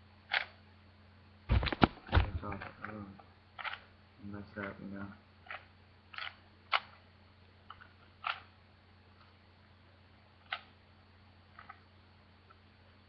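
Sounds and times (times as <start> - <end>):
puzzle cube twisting clicks: 0.3 - 0.6, 3.6 - 3.8, 5.5 - 7.0, 7.7 - 8.5, 10.4 - 10.7.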